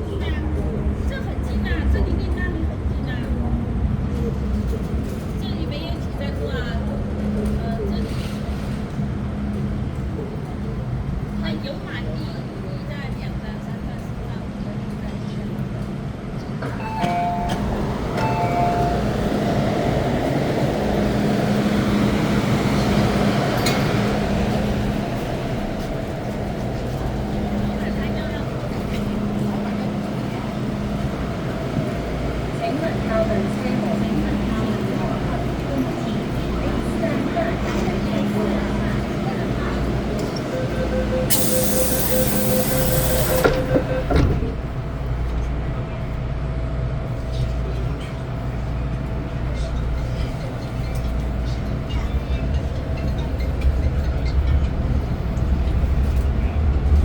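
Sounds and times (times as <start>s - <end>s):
train running noise: 0.0s - 57.0s
two-tone door chime beeps: 16.8s - 19.3s, 40.6s - 44.4s
train motor hum: 16.8s - 57.0s
loud air hiss: 41.3s - 43.6s.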